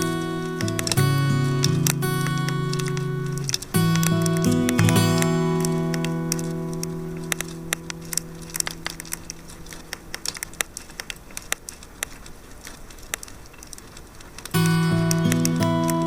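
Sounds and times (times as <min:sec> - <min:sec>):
acoustic guitar chord ringing: 0:00.0 - 0:09.8, 0:14.6 - 0:16.0
wood fire crackling and popping: 0:00.0 - 0:16.0.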